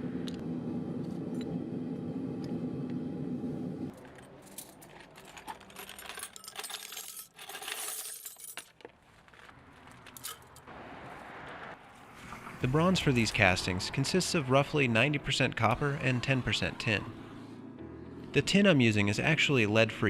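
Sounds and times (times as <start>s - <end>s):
steady low rumble: 0.0s - 4.0s
scrap metal clinking: 4.0s - 10.7s.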